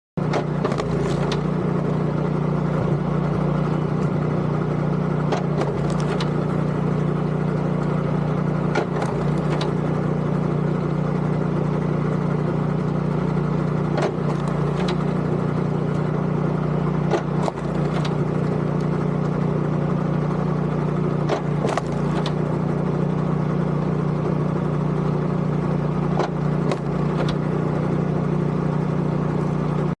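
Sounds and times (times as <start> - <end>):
log splitter engine running: 0.2 - 30.0
wood cracking as it splits: 0.3 - 1.6, 5.3 - 6.5, 8.7 - 9.8, 13.8 - 15.2, 17.0 - 19.0, 21.2 - 22.4, 26.2 - 27.4.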